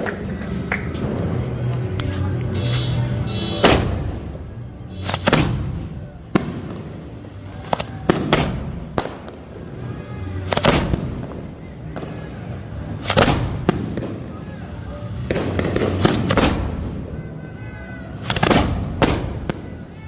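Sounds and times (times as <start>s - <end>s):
fireworks exploding: 1.0s - 17.3s, 18.1s - 20.0s.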